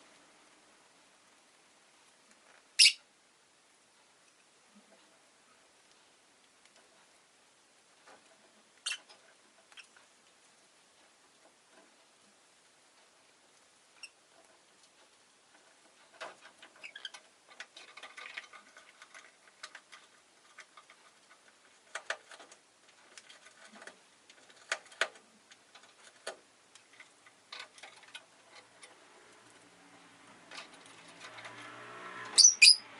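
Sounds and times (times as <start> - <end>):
lovebird soft chirps: 2.8 - 3.0, 32.4 - 32.8.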